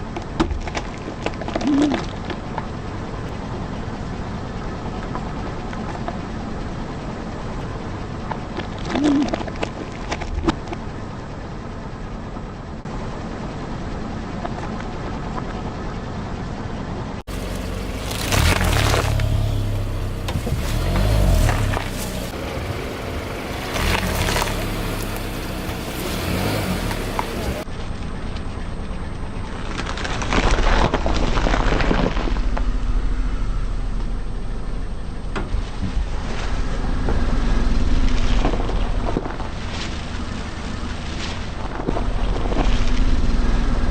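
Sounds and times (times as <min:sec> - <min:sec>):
car engine low rumble: 0:00.0 - 0:43.9
sharp cracks: 0:17.3 - 0:27.6
tyre crushing crunchy objects: 0:17.3 - 0:27.6
car engine idling: 0:17.3 - 0:29.6, 0:32.4 - 0:39.4.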